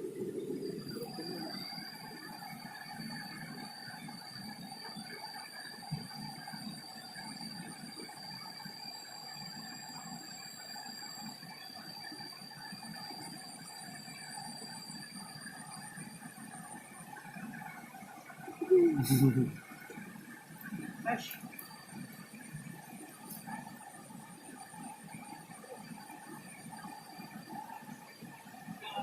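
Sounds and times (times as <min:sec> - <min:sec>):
thin high steady tone: 0:00.0 - 0:29.0.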